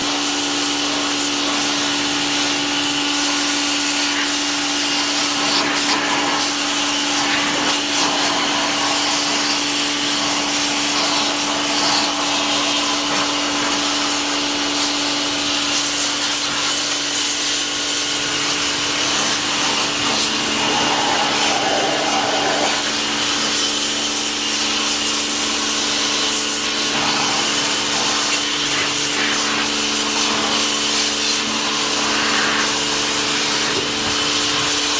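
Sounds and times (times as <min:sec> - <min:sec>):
washing machine motor hum: 0:17.8 - 0:34.9.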